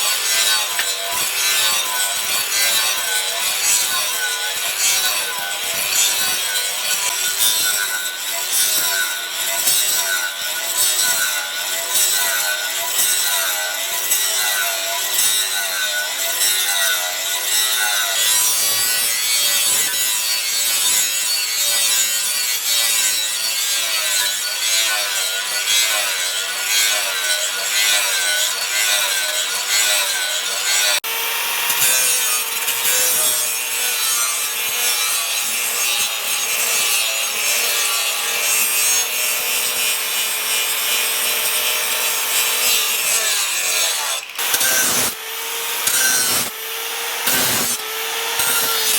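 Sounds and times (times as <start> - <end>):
hand tool rasping: 24.5 - 48.9.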